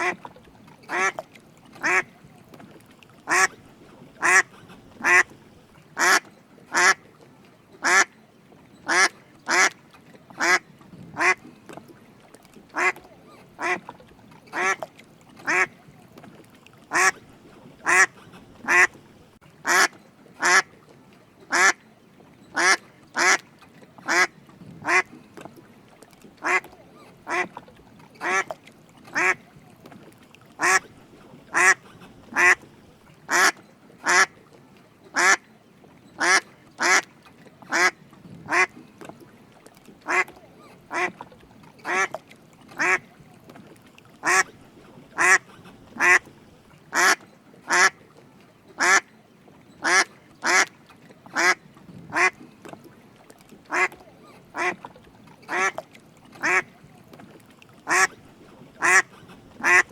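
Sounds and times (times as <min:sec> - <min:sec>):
duck quacking: 0:00.9 - 0:01.2, 0:01.8 - 0:02.1, 0:03.3 - 0:03.5, 0:04.2 - 0:05.3, 0:06.0 - 0:07.0, 0:07.8 - 0:08.1, 0:08.9 - 0:09.8, 0:10.4 - 0:10.6, 0:11.2 - 0:11.4, 0:12.8 - 0:13.0, 0:13.6 - 0:13.9, 0:14.5 - 0:14.8, 0:15.5 - 0:15.7, 0:16.9 - 0:17.2, 0:17.8 - 0:19.0, 0:19.6 - 0:20.7, 0:21.5 - 0:21.8, 0:22.6 - 0:23.4, 0:24.1 - 0:25.1, 0:26.4 - 0:26.7, 0:27.3 - 0:27.5, 0:28.2 - 0:28.5, 0:29.2 - 0:29.4, 0:30.6 - 0:30.8, 0:31.5 - 0:32.6, 0:33.3 - 0:34.3, 0:35.2 - 0:35.4, 0:36.2 - 0:37.0, 0:37.7 - 0:37.9, 0:38.5 - 0:38.7, 0:40.9 - 0:41.1, 0:41.8 - 0:42.1, 0:42.8 - 0:43.0, 0:44.2 - 0:44.5, 0:45.2 - 0:46.3, 0:46.9 - 0:48.0, 0:48.8 - 0:49.0, 0:49.8 - 0:50.7, 0:51.4 - 0:52.4, 0:53.7 - 0:54.0, 0:54.6 - 0:54.8, 0:55.5 - 0:55.8, 0:56.4 - 0:56.7, 0:57.9 - 0:58.2, 0:58.8 - 0:59.9.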